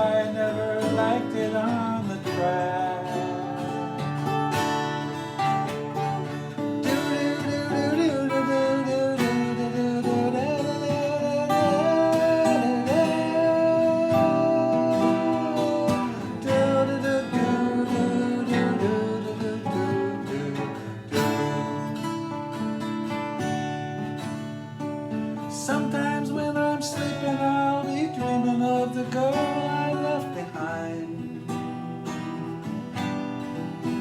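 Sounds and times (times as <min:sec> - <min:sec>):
sliding lead melody: 0:00.0 - 0:24.0
guitar accompaniment: 0:00.0 - 0:34.0.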